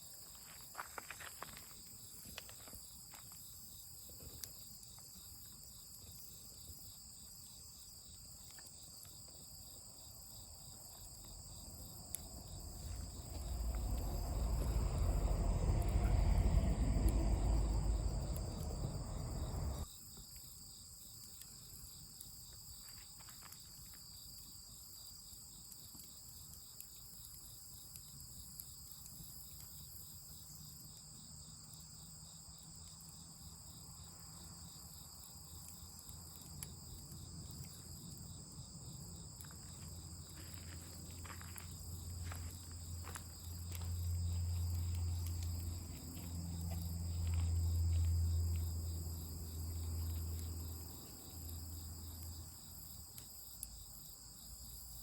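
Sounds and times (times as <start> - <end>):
insects chirping: 0.0 - 55.0
loud low rumble: 12.5 - 19.8.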